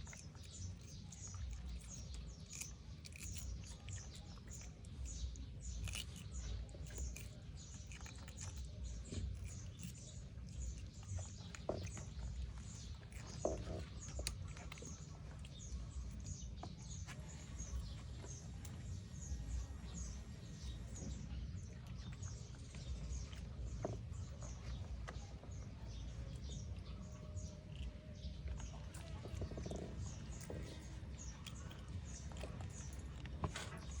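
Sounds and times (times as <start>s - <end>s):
small birds chirping: 0.0s - 34.0s
steady low rumble: 0.0s - 34.0s.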